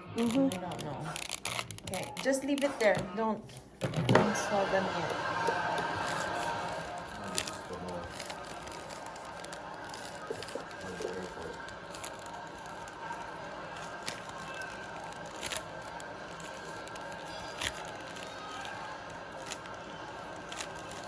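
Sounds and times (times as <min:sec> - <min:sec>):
plastic cube clicking and rattling: 0:00.1 - 0:04.4, 0:05.0 - 0:21.0.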